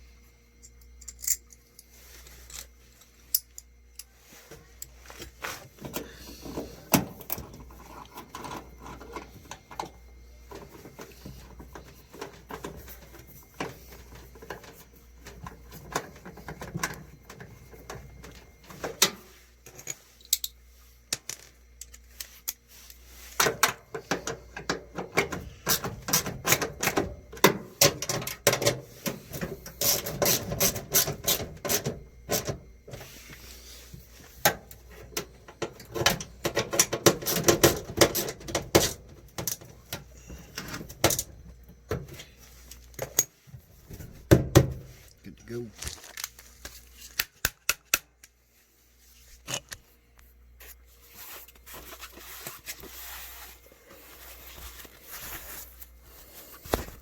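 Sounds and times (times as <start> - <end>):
tools clicking and scraping on metal: 0.6 - 4.2, 6.9 - 32.6.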